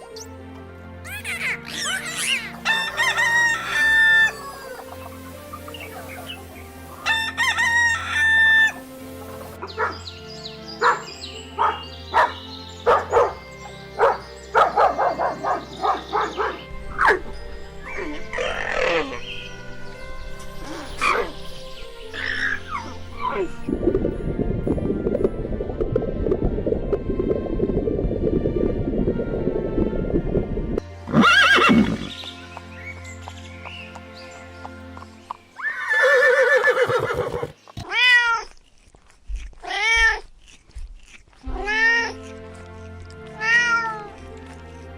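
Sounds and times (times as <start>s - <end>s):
background music: 0.0s - 44.9s
dog barking: 9.6s - 10.0s, 10.8s - 13.4s, 14.0s - 17.3s
horse whinnying: 31.1s - 32.1s, 35.6s - 38.5s, 43.4s - 44.2s
cat meowing: 37.8s - 38.6s, 39.6s - 40.3s, 41.5s - 42.2s, 43.3s - 44.2s.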